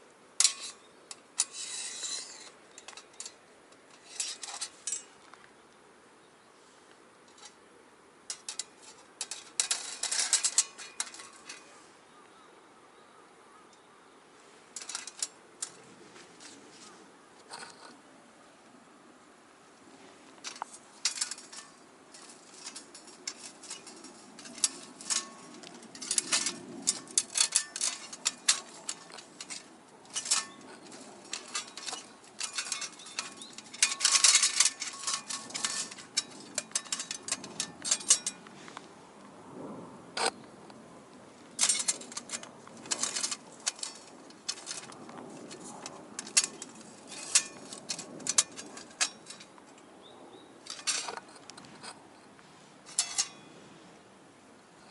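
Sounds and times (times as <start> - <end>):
stainless steel parts clinking: 0.4 - 5.3, 7.3 - 7.6, 8.3 - 11.8, 14.7 - 18.0, 20.3 - 38.5, 41.4 - 49.9, 50.6 - 52.0, 52.8 - 53.6.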